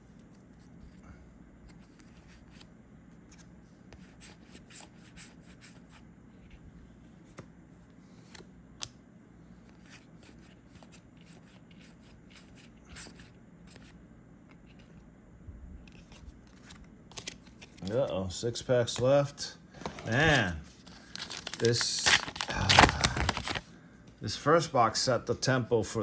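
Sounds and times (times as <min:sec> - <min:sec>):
trading cards sliding and snapping: 0:15.8 - 0:18.0.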